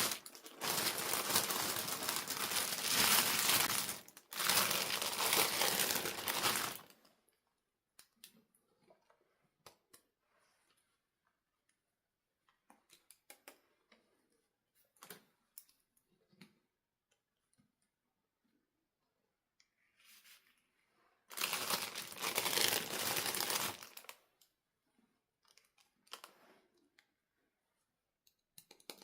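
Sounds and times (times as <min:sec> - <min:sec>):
packaging crinkling: 0:00.0 - 0:07.0, 0:21.3 - 0:24.2.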